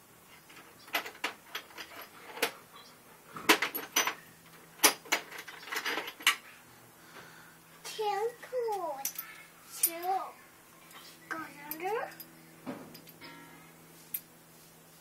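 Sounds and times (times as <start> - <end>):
hand tools clattering: 4.8 - 6.4.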